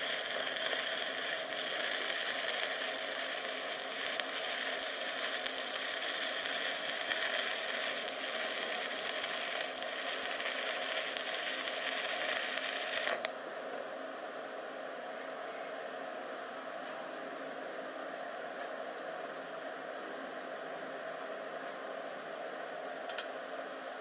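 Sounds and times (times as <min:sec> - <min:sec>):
arc welding crackling and hissing: 0:00.0 - 0:13.4.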